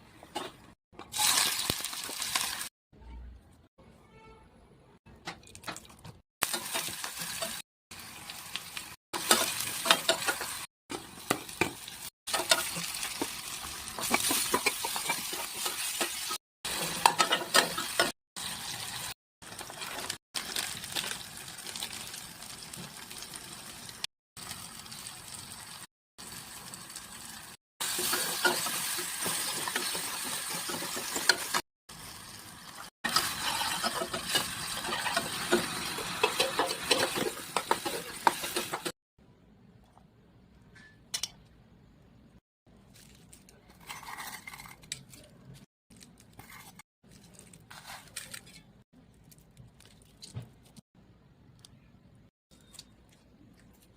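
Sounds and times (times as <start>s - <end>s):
food sizzling in a pan: 1.1s - 2.7s, 6.4s - 39.0s
spatula scraping a pan: 33.1s - 38.9s.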